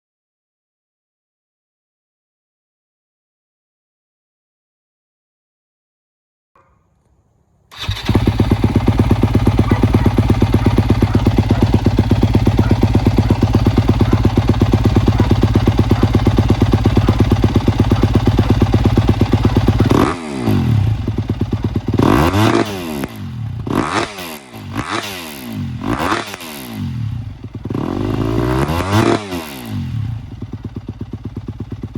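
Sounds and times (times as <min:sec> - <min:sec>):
dirt bike engine revving: 0:07.7 - 0:31.9.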